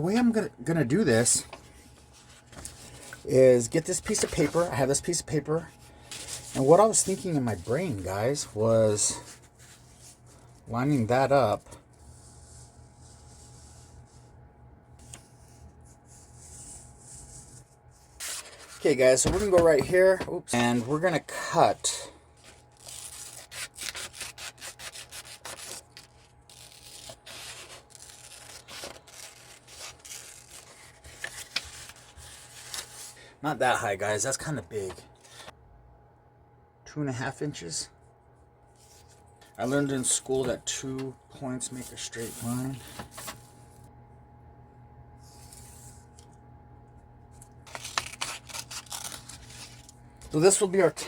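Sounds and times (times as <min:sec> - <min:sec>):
soft paper scraping: 0:00.2 - 0:14.4, 0:15.0 - 0:33.3, 0:38.7 - 0:43.7, 0:45.2 - 0:46.4, 0:47.4 - 0:51.0
crisp paper cutting strokes: 0:01.5 - 0:04.9, 0:22.4 - 0:33.2, 0:41.7 - 0:43.4, 0:47.7 - 0:50.9
soft stroke across paper: 0:12.0 - 0:14.3, 0:15.0 - 0:18.8, 0:41.7 - 0:43.4, 0:45.2 - 0:46.2.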